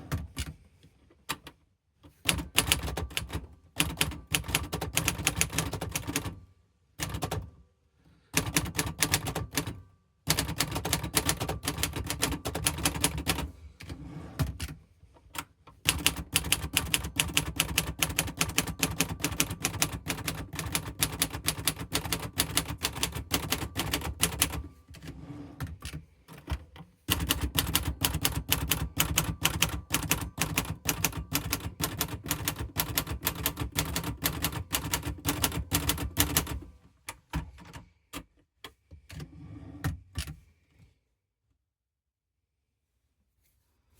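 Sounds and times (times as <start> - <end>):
typewriter keystrikes: 2.3 - 6.4, 8.4 - 13.5, 15.9 - 24.6, 26.5 - 36.6.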